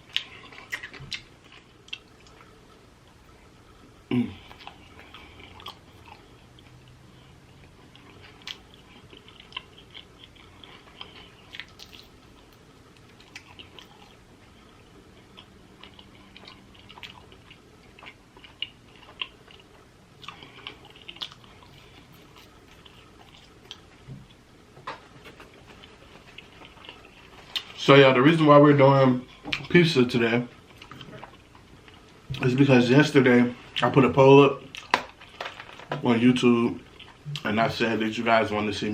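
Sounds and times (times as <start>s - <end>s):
chewing and biting pizza: 4.3s - 24.5s.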